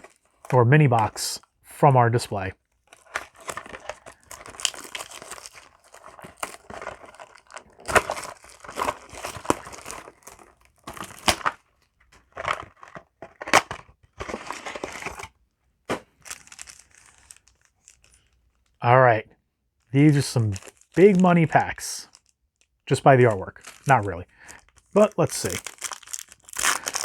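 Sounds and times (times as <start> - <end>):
foil packs handled: 0.0 - 1.1, 2.9 - 15.3, 15.9 - 18.3, 23.6 - 27.0
card packaging crinkling and tearing: 0.0 - 1.4, 2.8 - 15.3, 15.9 - 18.4, 20.2 - 22.4, 23.0 - 27.0.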